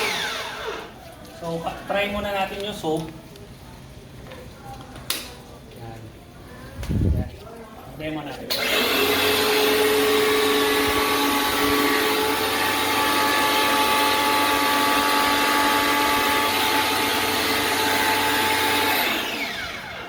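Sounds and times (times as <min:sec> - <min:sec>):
motor spinning down: 0:00.0 - 0:00.9, 0:08.5 - 0:20.0
pressure washer running: 0:00.0 - 0:01.0, 0:08.5 - 0:20.0.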